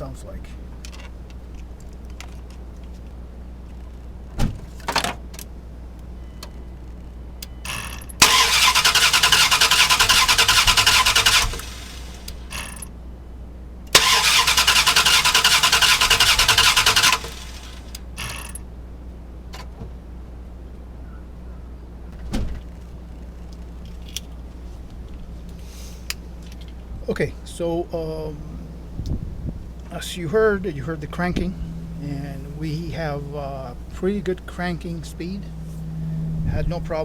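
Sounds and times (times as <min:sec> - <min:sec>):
engine cranking by starter: 0:07.7 - 0:12.9, 0:13.9 - 0:18.6, 0:28.0 - 0:37.0.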